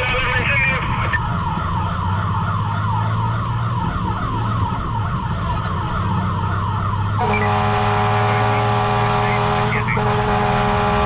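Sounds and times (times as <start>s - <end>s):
fire engine siren yelping: 0.0s - 11.0s
truck engine running: 0.0s - 11.0s
steady horn: 7.2s - 11.0s.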